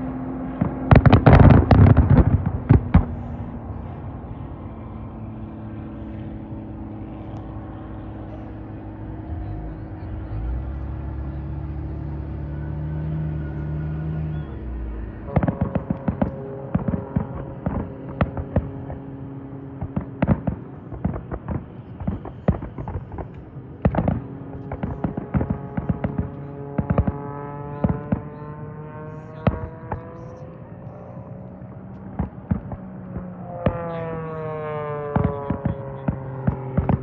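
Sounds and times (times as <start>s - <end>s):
low steady hum: 0.0s - 37.0s
fireworks bangs and crackles: 0.4s - 4.0s, 14.3s - 37.0s.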